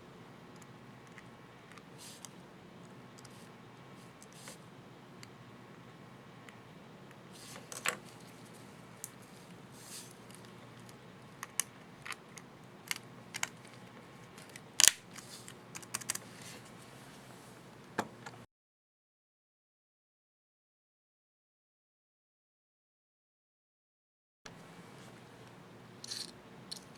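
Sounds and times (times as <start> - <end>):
plastic keycap clicks and snaps: 14.4 - 15.1.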